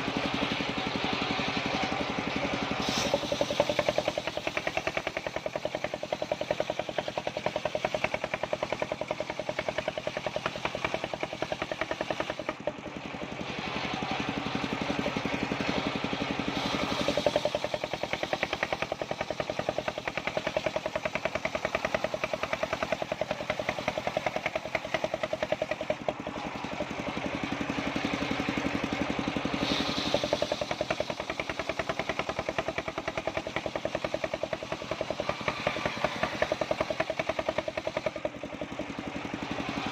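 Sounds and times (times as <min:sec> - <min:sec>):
engine-driven wood saw sawing: 0:00.0 - 0:39.9.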